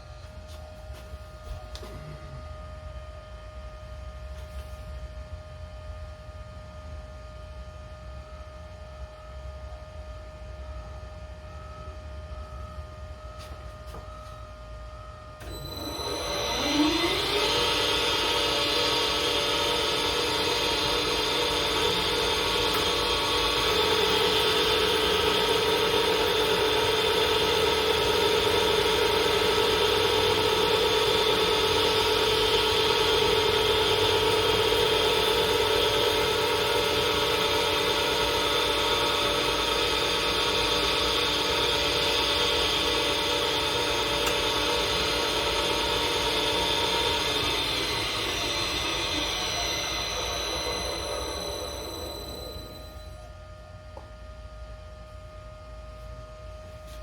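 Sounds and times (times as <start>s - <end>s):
lathe machine hum: 15.4s - 53.4s.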